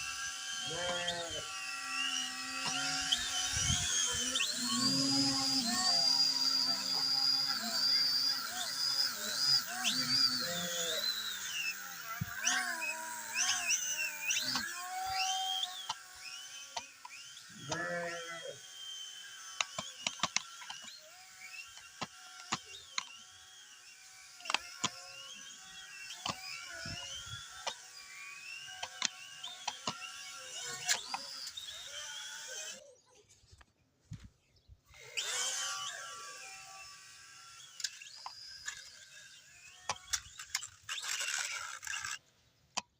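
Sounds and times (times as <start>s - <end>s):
drone motors whining: 0.0s - 33.4s, 34.1s - 42.9s
sharp clicks and knocks: 19.5s - 21.0s.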